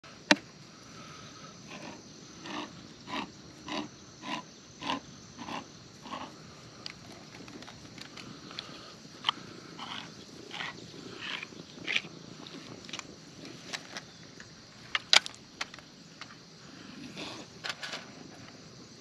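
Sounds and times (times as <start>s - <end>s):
cat eating: 1.7s - 13.9s.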